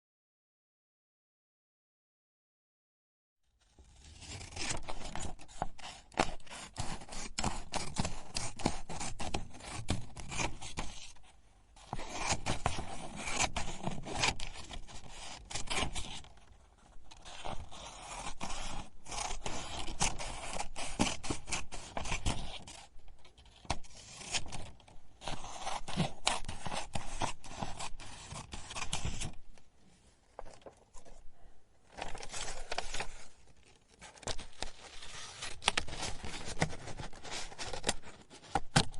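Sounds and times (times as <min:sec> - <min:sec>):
scissors cutting paper: 0:17.2 - 0:22.9.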